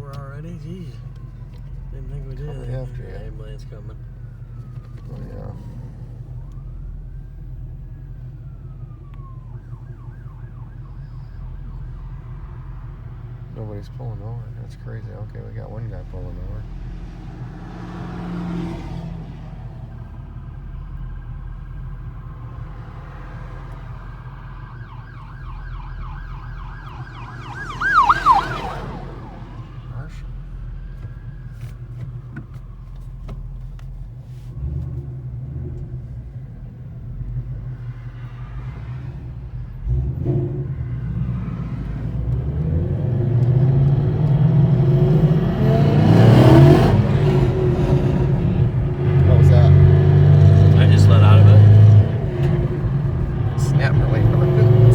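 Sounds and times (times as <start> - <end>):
ambulance siren: 0.0 - 13.6, 16.2 - 34.2, 40.8 - 54.9
road and engine rumble: 0.0 - 54.9
car engine revving from inside cabin: 16.6 - 20.1, 34.5 - 54.9.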